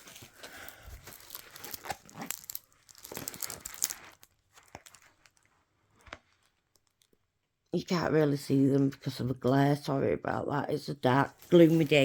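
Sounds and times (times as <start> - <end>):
plastic film crinkling: 0.0 - 7.1.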